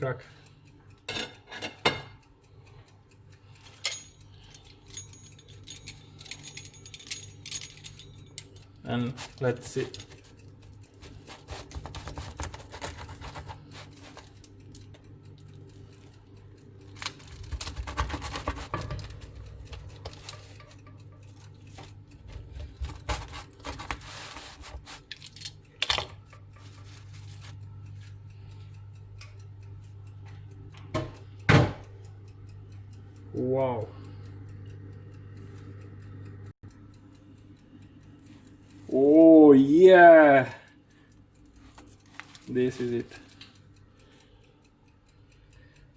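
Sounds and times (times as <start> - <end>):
low steady hum: 0.0 - 45.9
utensils scraping on crisp pizza: 11.0 - 14.5, 17.1 - 20.8, 21.4 - 25.1.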